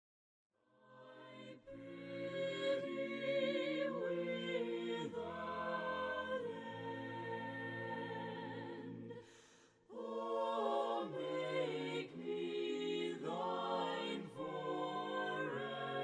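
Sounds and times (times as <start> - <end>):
voices singing a hymn in harmony: 0.8 - 16.0.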